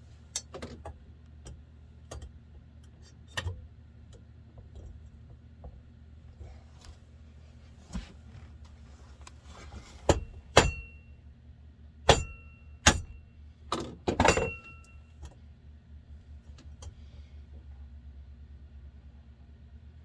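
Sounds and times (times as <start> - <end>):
steady low hum: 0.0 - 20.0
metal tools clinking on workbench: 14.1 - 15.0.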